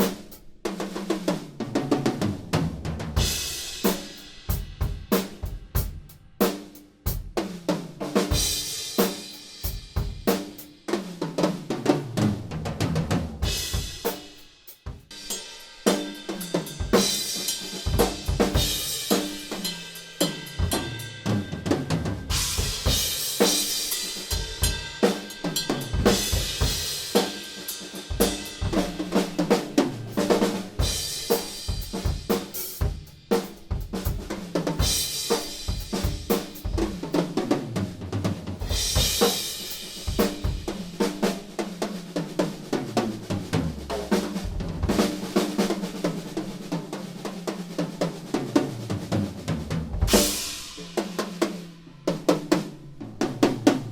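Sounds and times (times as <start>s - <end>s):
acoustic drum kit playing: 0.0s - 53.9s
cymbal crashes: 22.2s - 23.9s.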